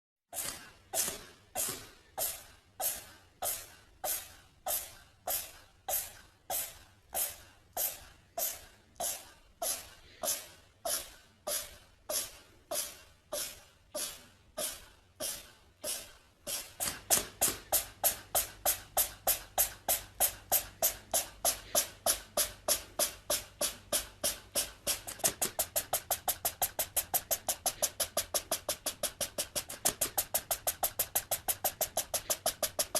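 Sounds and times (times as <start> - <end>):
cat sneezing: 0.4 - 16.9.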